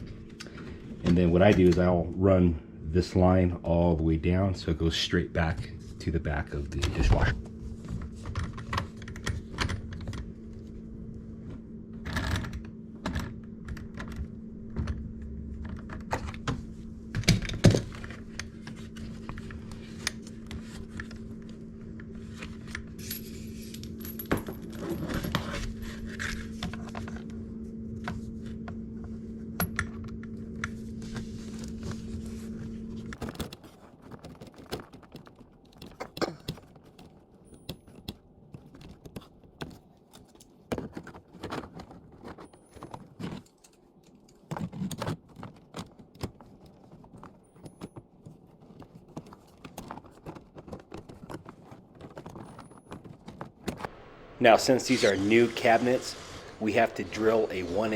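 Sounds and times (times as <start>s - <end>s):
steady low hum: 0.0s - 33.2s, 53.7s - 57.9s.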